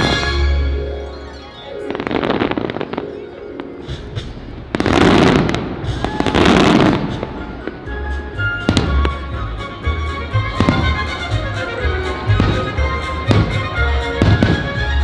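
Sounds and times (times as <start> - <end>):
fireworks bursting: 0.0 - 0.8, 1.6 - 15.0
music with bass beat: 8.1 - 15.0.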